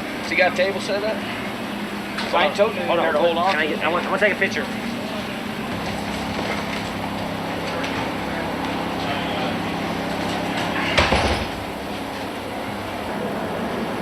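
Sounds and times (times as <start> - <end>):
steady mechanical hum: 0.0 - 14.0
loud knock: 11.0 - 11.7.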